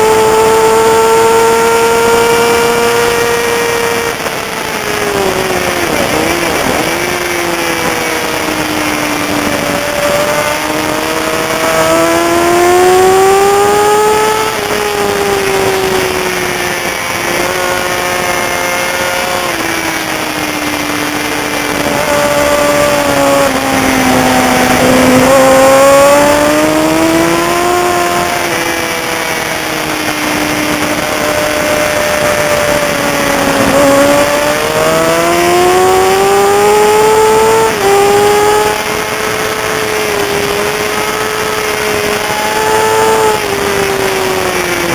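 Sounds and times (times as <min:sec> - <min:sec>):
sport motorcycle engine revving: 0:00.0 - 0:44.9
steady rush of noise: 0:00.0 - 0:44.9.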